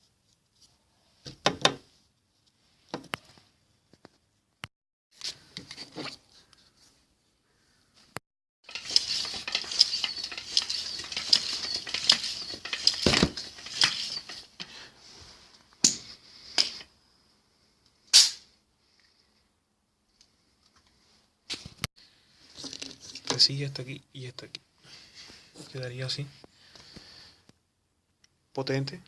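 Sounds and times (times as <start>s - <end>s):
hard parts clicking: 8.6s - 14.9s, 16.6s - 16.9s
parts rattling and clattering: 8.6s - 14.9s, 15.9s - 16.9s, 22.5s - 23.6s.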